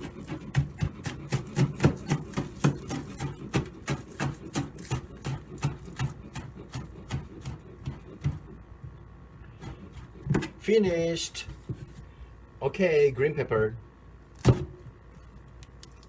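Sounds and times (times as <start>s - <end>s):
knife chopping on cutting board: 0.0s - 8.6s, 9.6s - 10.6s.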